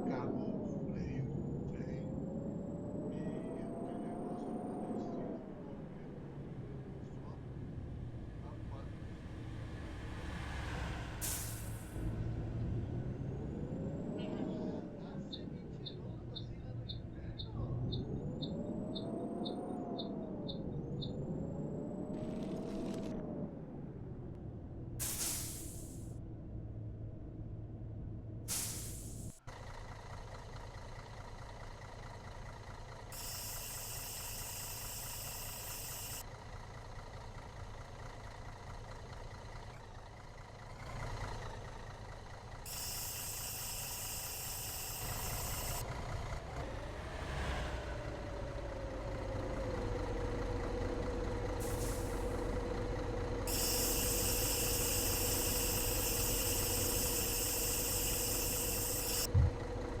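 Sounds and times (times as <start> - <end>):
vehicle engine rumbling: 0.0 - 60.0
high hiss: 42.7 - 45.8, 53.5 - 59.3.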